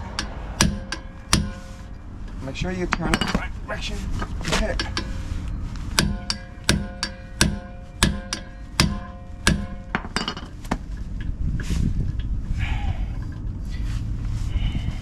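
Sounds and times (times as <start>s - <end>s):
hammer striking metal tool: 0.0s - 1.8s, 6.0s - 10.5s
ringing metal tone: 4.8s - 10.6s.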